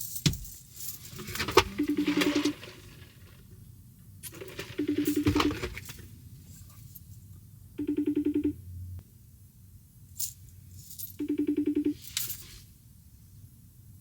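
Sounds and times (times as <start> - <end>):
phone ring tone: 1.6 - 2.7, 4.4 - 5.8, 7.8 - 8.7, 11.2 - 12.0.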